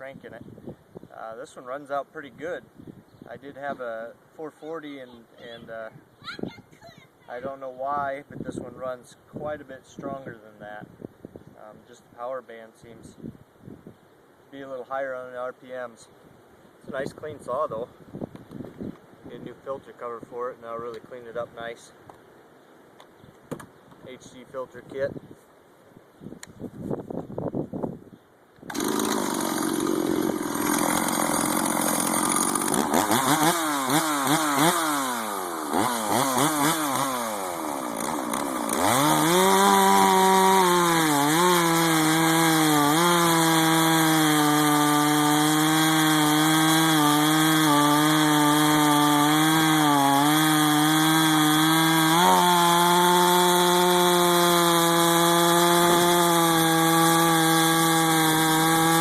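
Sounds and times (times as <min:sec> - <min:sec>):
chainsaw revving: 0:28.7 - 0:59.0.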